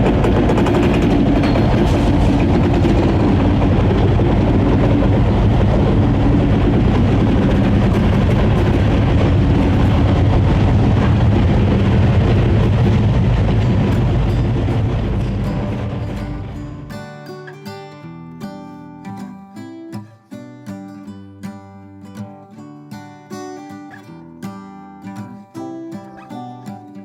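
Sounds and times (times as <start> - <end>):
diesel locomotive engine running: 0.0 - 17.0
rumbling rail noise: 0.0 - 17.3.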